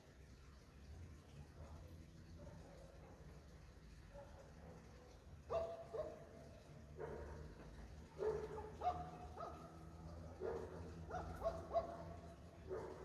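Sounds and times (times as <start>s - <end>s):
dogs barking with echo: 10.4s - 13.0s.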